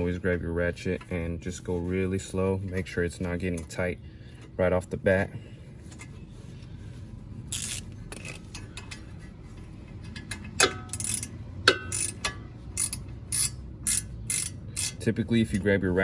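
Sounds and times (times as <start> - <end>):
hand ratchet clicking: 7.5 - 9.0, 10.1 - 15.1.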